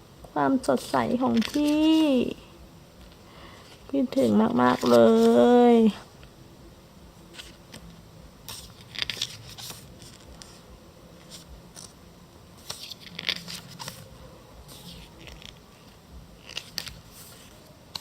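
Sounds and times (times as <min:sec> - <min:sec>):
paper rustling and crinkling: 0:00.8 - 0:02.2, 0:03.0 - 0:05.6, 0:08.5 - 0:10.6, 0:12.6 - 0:18.0.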